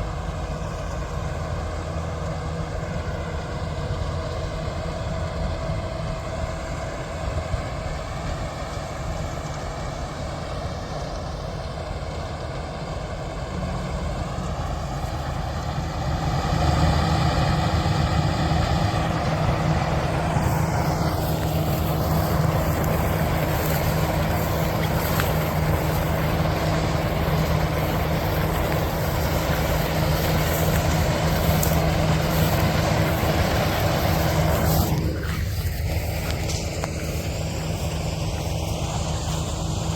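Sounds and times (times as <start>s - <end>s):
combine harvester engine running: 0.0s - 39.9s.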